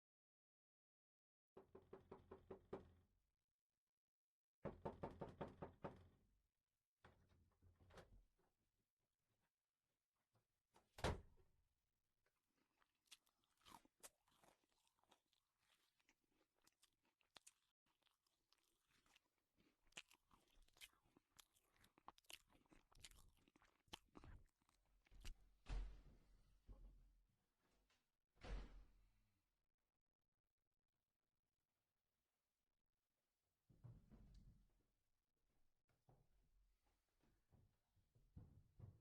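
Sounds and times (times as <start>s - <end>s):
faint crunching and clicking: 12.3s - 25.4s.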